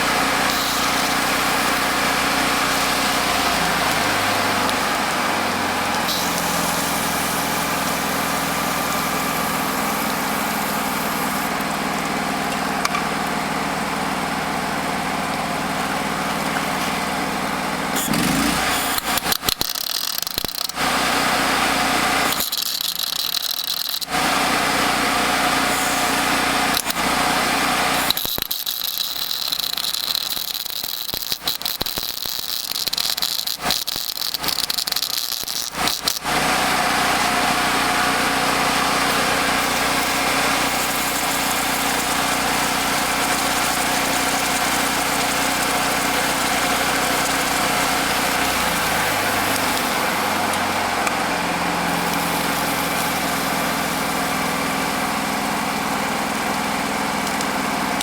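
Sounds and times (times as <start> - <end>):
engine running: 0.0 - 58.0
sharp clicks: 18.0 - 20.8, 22.3 - 24.2, 28.0 - 36.3.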